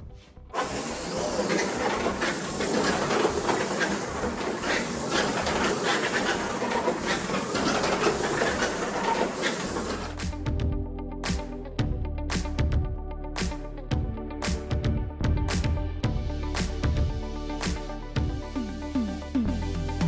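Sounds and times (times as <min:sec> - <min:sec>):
abrasive scrubbing on metal: 0:00.6 - 0:10.2.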